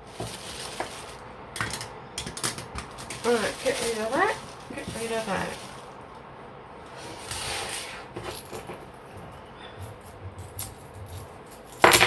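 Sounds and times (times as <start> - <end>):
packaging rustle: 0.0 - 6.2.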